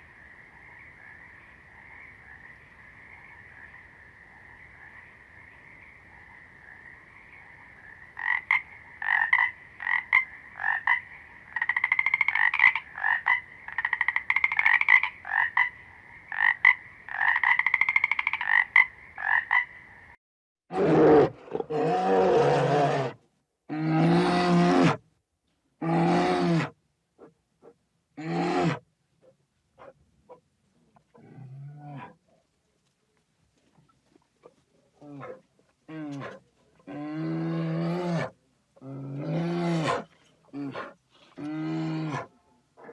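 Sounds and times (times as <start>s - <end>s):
frogs croaking in chorus: 0.0s - 20.2s.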